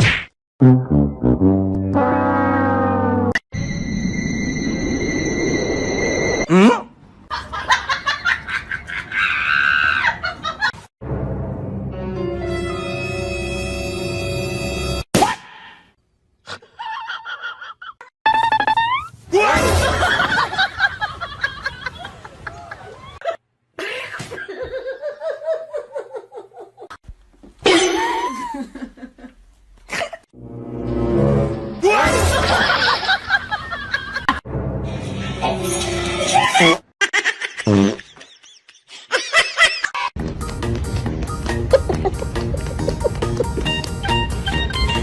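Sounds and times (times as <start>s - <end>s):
high squeal: 3.5s - 6.5s
person laughing hard: 27.6s - 29.3s, 41.6s - 43.8s
person laughing: 27.6s - 30.2s, 36.4s - 40.1s, 41.6s - 43.8s.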